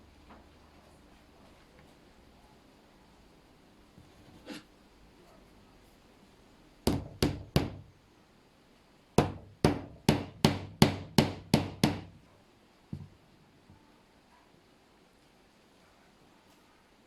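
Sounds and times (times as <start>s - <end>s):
hammer striking into wood: 6.9s - 7.9s, 9.2s - 12.1s.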